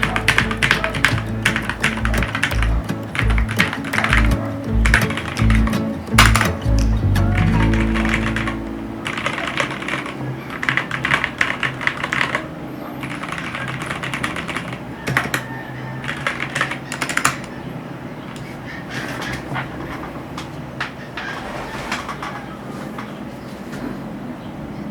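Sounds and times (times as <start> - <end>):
mechanical keyboard typing: 0.0 - 17.5.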